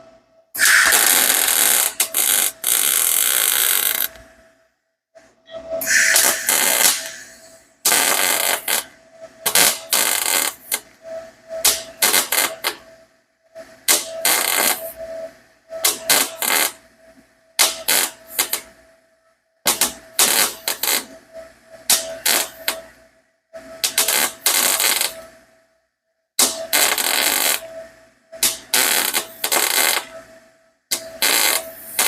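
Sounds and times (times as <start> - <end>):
welding arc crackling: 0.6 - 4.1, 5.9 - 8.8, 9.4 - 10.8, 11.6 - 12.8, 17.8 - 18.6, 22.1 - 22.8, 23.9 - 25.2, 28.4 - 30.0, 30.9 - 32.0.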